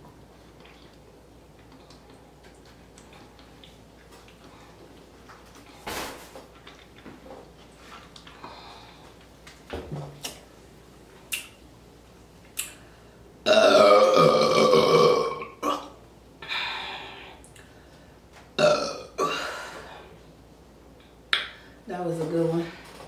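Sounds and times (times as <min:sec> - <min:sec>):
woman burping: 0:13.4 - 0:16.0, 0:18.6 - 0:19.8.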